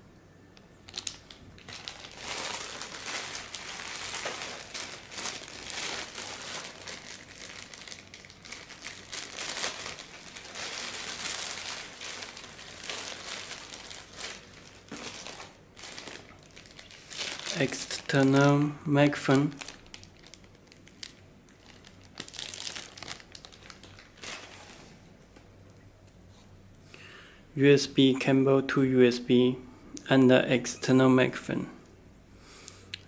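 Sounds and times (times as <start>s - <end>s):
plastic packaging crinkling: 0.8s - 25.8s.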